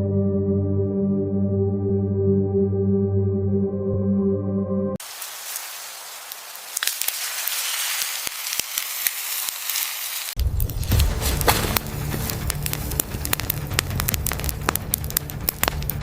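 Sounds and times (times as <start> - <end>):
soft ambient music: 0.0 - 5.0, 10.4 - 16.0
fire crackling and popping: 5.0 - 16.0.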